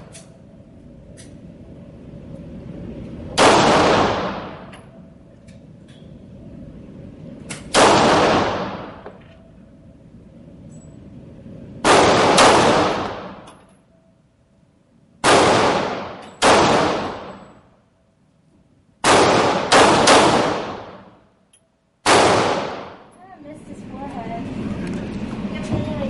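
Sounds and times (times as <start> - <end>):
gunshots with echo: 3.4 - 4.7, 11.8 - 13.5, 15.2 - 17.4, 19.0 - 21.1, 22.0 - 23.0.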